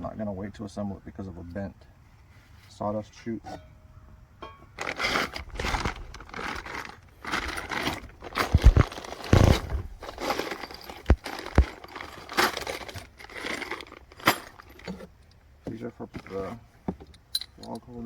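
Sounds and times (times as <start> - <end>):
metal parts clinking and rattling: 4.8 - 15.4, 17.0 - 17.9.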